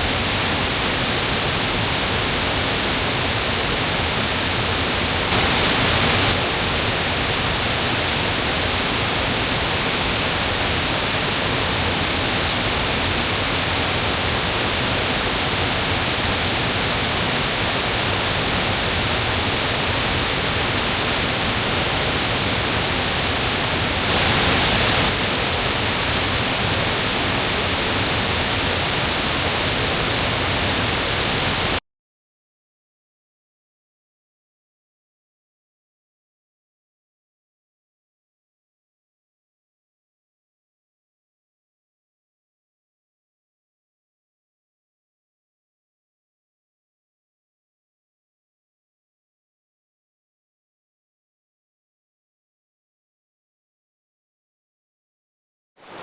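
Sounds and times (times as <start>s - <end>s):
mountain stream rushing: 4.5s - 7.6s, 8.2s - 31.8s.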